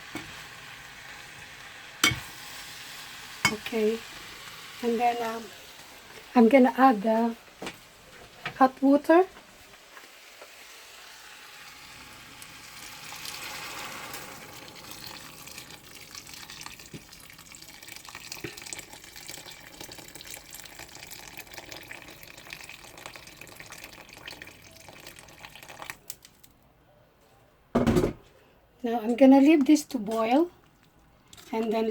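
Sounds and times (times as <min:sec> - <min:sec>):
water poured into hot pan: 0:00.0 - 0:06.4, 0:10.5 - 0:26.2
pan crackling and sizzling: 0:00.0 - 0:26.2, 0:31.4 - 0:31.9.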